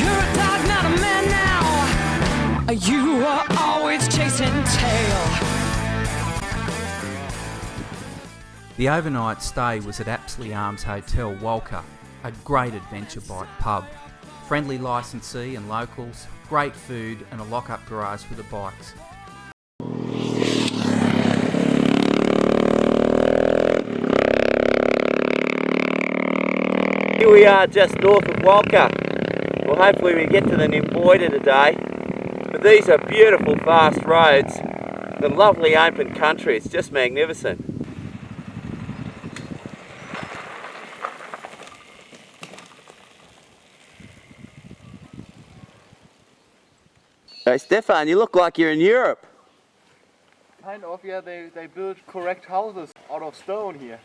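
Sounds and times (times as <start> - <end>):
motorcycle engine accelerating: 0.0 - 2.7, 4.2 - 8.5, 19.8 - 45.9.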